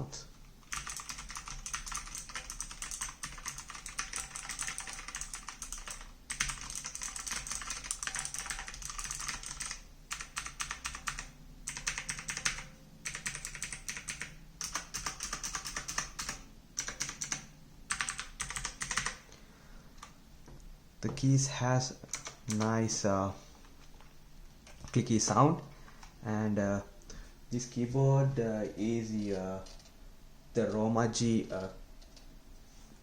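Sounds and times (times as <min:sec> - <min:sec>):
fast typing on mechanical keyboard: 0:00.6 - 0:19.2, 0:22.1 - 0:22.8.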